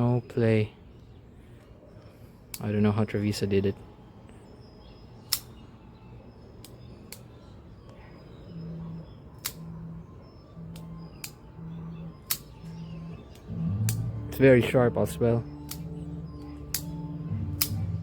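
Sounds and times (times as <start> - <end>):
folding knife clicking: 5.3 - 5.6, 9.4 - 9.6, 10.7 - 11.5, 12.2 - 14.1, 15.5 - 17.9
pulsing low hum: 8.4 - 18.0.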